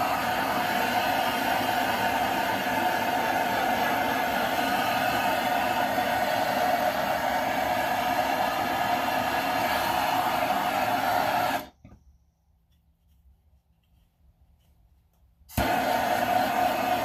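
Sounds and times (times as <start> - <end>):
gas torch flame hissing: 0.0 - 11.7, 15.5 - 17.0.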